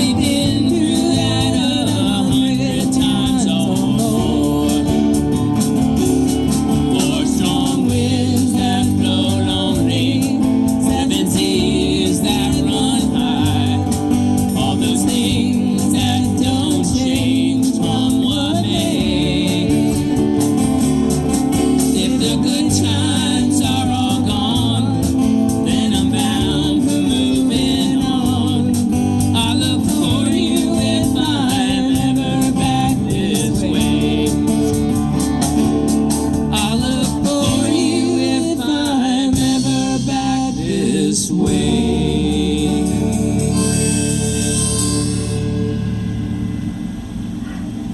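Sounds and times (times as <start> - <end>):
live band playing folk music: 0.0 - 46.2
person singing: 21.7 - 34.9, 36.5 - 45.0.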